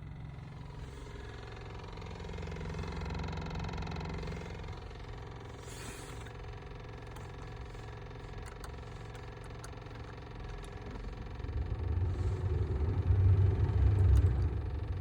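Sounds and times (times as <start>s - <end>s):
steady low hum: 0.0s - 15.0s
low droning rumble: 10.5s - 15.0s.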